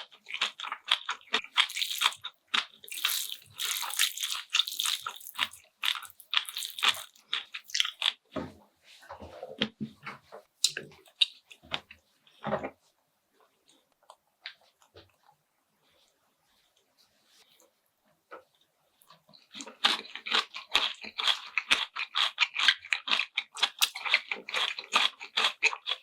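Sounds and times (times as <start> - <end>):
wet slurping and chewing: 0.0 - 8.2, 19.0 - 26.0.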